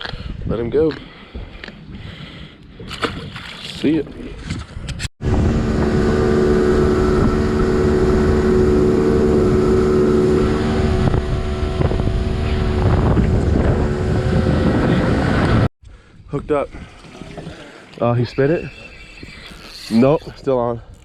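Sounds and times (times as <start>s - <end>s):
wind buffeting microphone: 0.0s - 21.0s
motorboat engine running: 5.2s - 15.7s.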